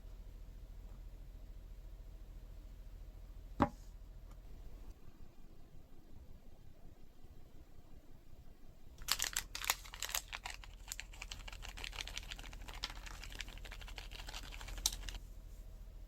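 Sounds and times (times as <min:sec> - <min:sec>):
slime crackling and popping: 0:09.0 - 0:15.2.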